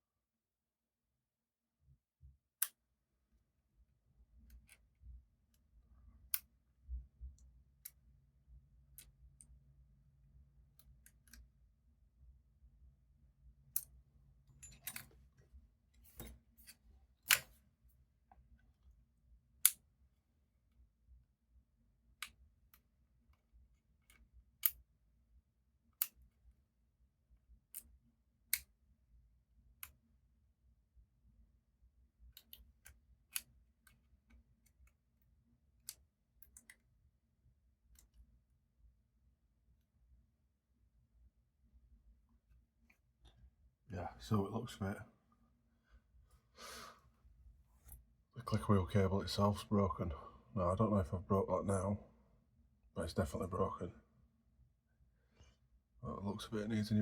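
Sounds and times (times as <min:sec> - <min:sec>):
small clicks and taps of tools: 0:04.4 - 0:04.9, 0:10.8 - 0:11.5, 0:27.7 - 0:28.7, 0:32.3 - 0:35.0, 0:35.8 - 0:36.9, 0:37.9 - 0:38.3.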